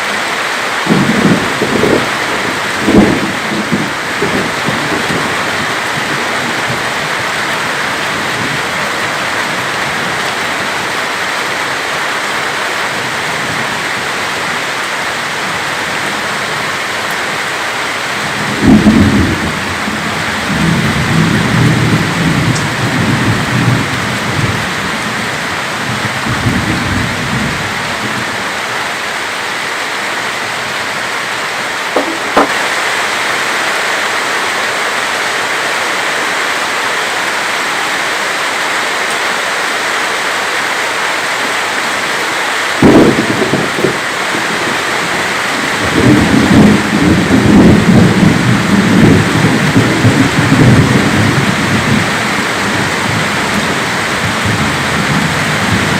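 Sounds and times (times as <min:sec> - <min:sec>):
heavy rain falling: 0:00.0 - 0:55.9
thunder rumbling and cracking: 0:00.8 - 0:10.9, 0:18.2 - 0:28.4, 0:42.8 - 0:55.9.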